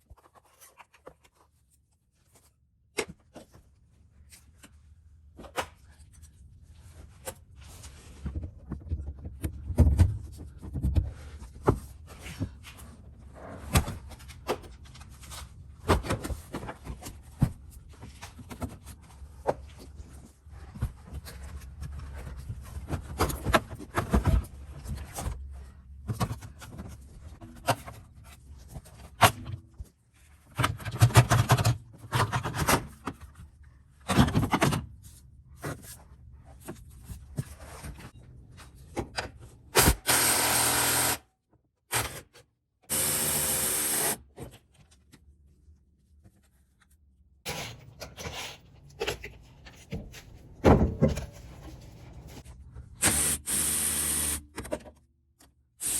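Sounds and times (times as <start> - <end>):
power tool running: 39.8 - 41.2, 42.9 - 44.2, 53.0 - 54.4.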